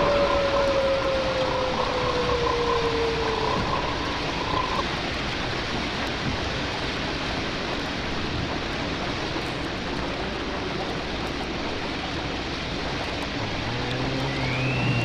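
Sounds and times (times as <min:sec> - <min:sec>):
rising whistle-like glide: 0:00.0 - 0:05.2, 0:13.4 - 0:15.0
low droning tones: 0:00.0 - 0:06.6, 0:09.4 - 0:15.0.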